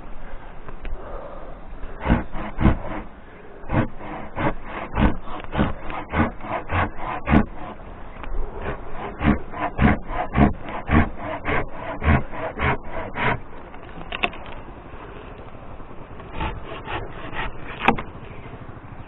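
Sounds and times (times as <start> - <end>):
rhythmic rasping on wood: 1.9 - 14.3, 16.1 - 18.8.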